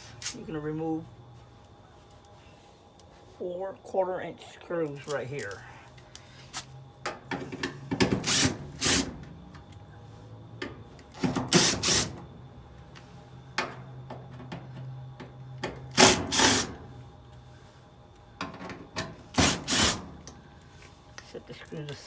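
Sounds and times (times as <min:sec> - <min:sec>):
impact driver removing screws: 0:16.0 - 0:16.7.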